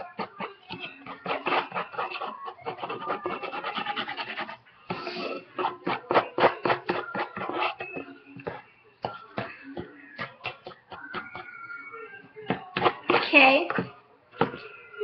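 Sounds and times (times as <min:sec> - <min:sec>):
utensil scraping slime in bowl: 0:00.0 - 0:08.6.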